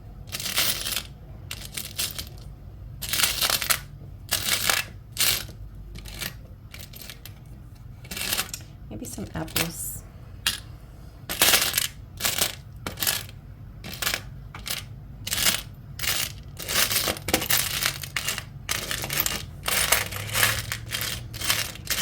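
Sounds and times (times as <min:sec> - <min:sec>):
metal charms clinking: 0:11.3 - 0:22.0.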